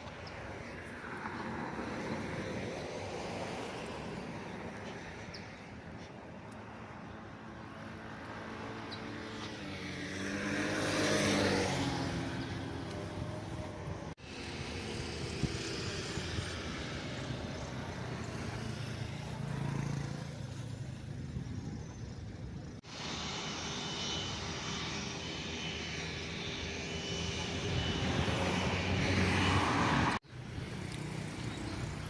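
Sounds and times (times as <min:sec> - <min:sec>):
vehicle passing: 0:27.1 - 0:32.0.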